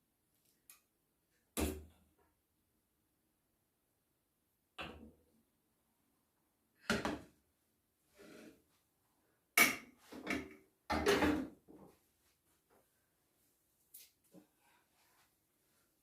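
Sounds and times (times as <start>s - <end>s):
knocks and clatters in a kitchen: 6.8s - 7.4s, 9.6s - 12.0s.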